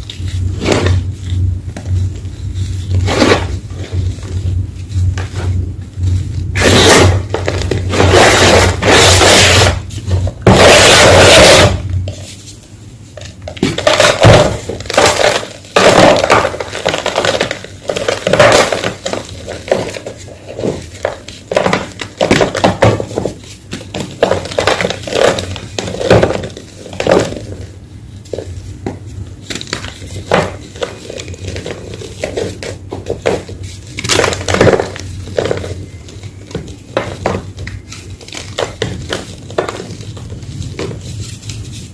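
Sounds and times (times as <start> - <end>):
chalk blocks crunching: 6.5 - 12.4, 29.4 - 41.9.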